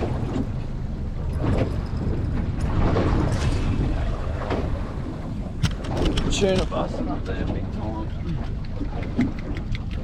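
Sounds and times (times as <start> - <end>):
boat engine running: 0.0 - 10.0
water noise: 0.0 - 10.0
wind: 0.0 - 10.0.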